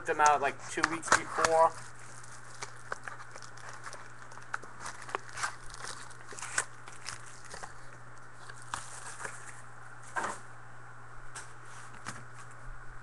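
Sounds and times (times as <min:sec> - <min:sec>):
low electrical hum: 0:00.0 - 0:13.0
card pack wrappers crinkling: 0:00.7 - 0:09.7.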